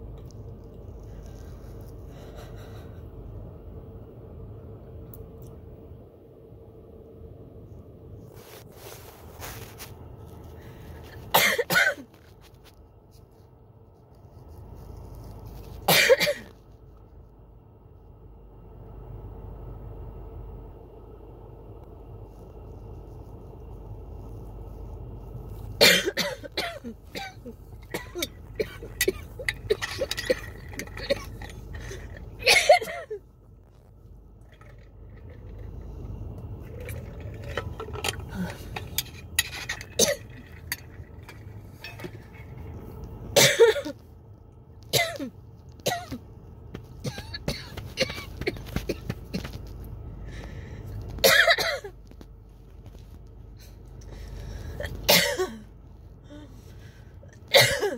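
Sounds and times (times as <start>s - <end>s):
low steady hum: 0.0s - 57.9s
person coughing: 11.3s - 12.1s, 15.9s - 16.5s, 25.8s - 33.2s, 40.0s - 40.4s, 43.4s - 44.0s, 44.9s - 46.2s, 47.0s - 49.6s, 51.2s - 52.0s, 54.8s - 55.7s, 57.5s - 57.9s.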